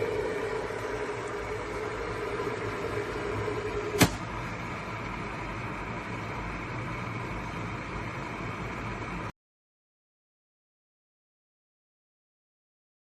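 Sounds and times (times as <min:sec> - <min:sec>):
electric kettle heating: 0:00.0 - 0:09.3.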